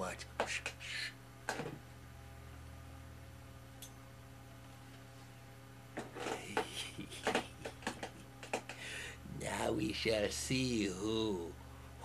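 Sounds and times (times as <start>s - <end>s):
low electrical hum: 0.0s - 12.0s
quick irregular clicks and clatter: 7.2s - 8.8s.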